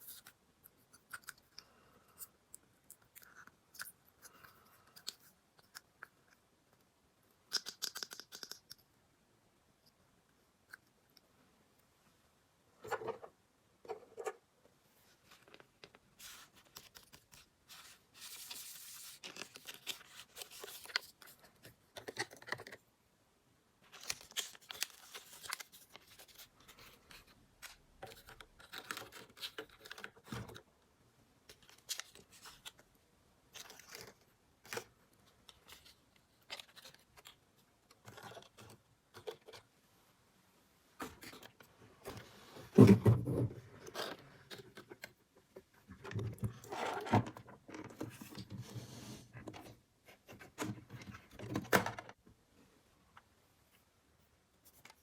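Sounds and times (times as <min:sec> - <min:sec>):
plastic toy pieces clicking: 0:07.5 - 0:08.8.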